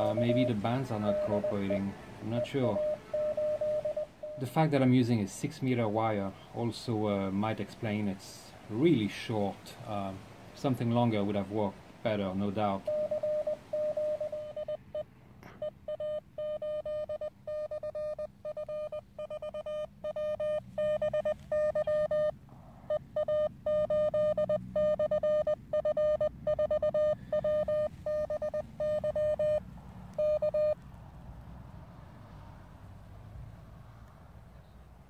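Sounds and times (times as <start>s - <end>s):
morse code tone: 0.0s - 4.6s, 12.8s - 30.8s.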